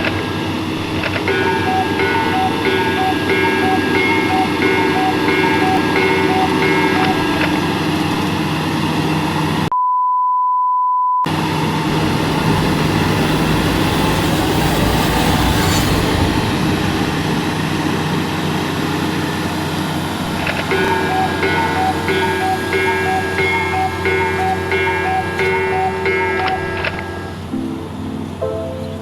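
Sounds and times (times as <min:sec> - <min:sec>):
bulldozer diesel engine under load: 0:00.0 - 0:09.7, 0:11.3 - 0:28.4
steady beep: 0:01.4 - 0:07.4, 0:20.8 - 0:29.0
bulldozer pushing soil: 0:11.3 - 0:27.5.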